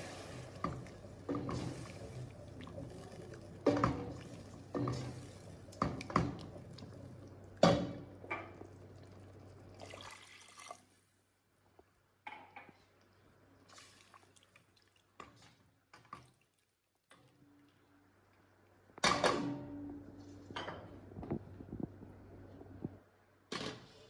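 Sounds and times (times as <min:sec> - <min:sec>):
water dripping and splashing: 0:00.0 - 0:11.0, 0:13.6 - 0:17.3.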